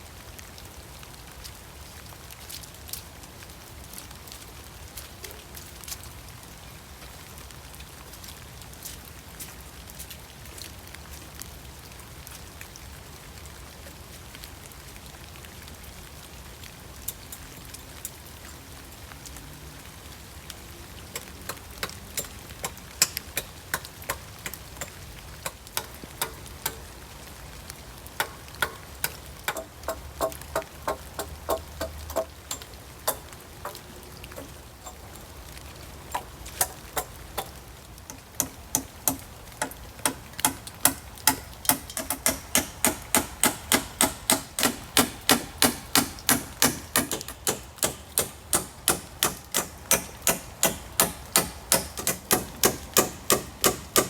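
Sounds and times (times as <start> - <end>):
heavy rain: 0.0 - 54.0
hammer driving nails: 21.2 - 26.8, 28.2 - 33.8, 36.6 - 37.5, 38.1 - 54.0.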